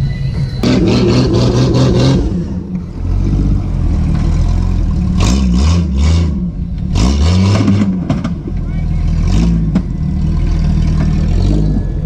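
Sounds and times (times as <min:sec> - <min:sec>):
vehicle engine revving: 0:00.6 - 0:12.0.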